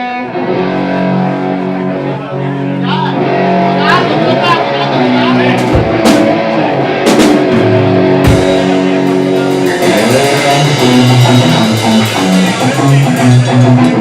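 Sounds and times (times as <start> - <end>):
bass guitar notes: 0.0 - 14.0
electric guitar: 0.0 - 14.0
drums and cymbal hits: 5.4 - 14.0.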